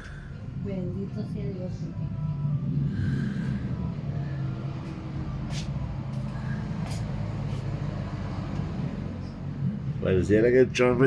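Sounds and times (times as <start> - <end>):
engine idling: 0.0 - 10.0.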